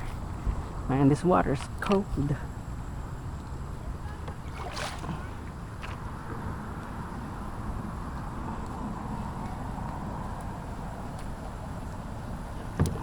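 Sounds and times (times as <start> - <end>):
wind rumble on microphone: 0.0 - 13.0
paddle splashing in water: 4.1 - 6.5.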